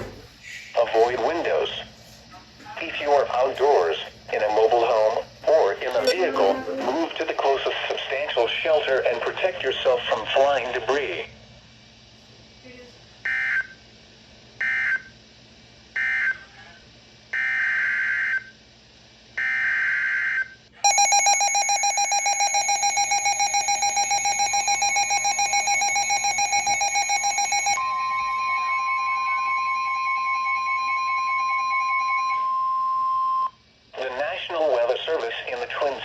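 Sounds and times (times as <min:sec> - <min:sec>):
digital data bursts: 0:20.8 - 0:27.8
harsh pulsing attention tone: 0:20.8 - 0:32.4.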